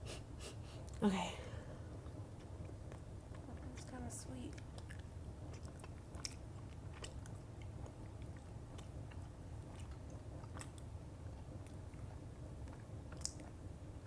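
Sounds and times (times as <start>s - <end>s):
low steady hum: 0.0s - 14.0s
person chewing: 4.8s - 10.9s.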